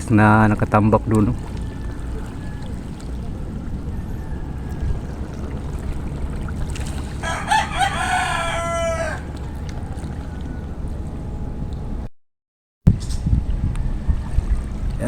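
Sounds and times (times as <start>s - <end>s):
low background rumble: 0.0s - 12.1s, 12.9s - 15.0s
rooster crowing: 1.4s - 5.5s, 7.2s - 11.3s.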